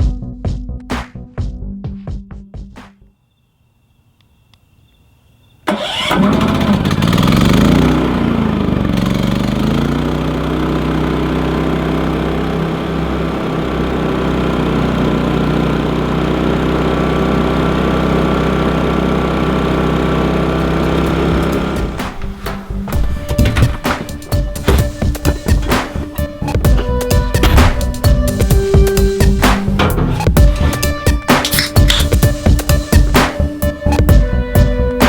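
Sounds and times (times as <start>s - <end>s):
generator engine starting and running: 5.6s - 35.0s.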